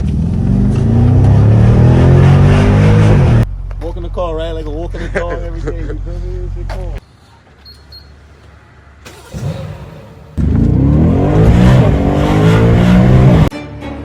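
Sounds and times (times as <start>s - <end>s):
engine revving hard: 0.4s - 3.4s, 10.4s - 13.5s.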